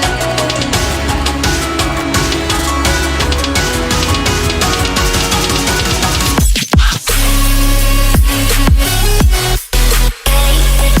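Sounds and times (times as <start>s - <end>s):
falling bass sweeps: 0.0s - 6.4s
electronic music with heavy beat: 0.0s - 11.0s.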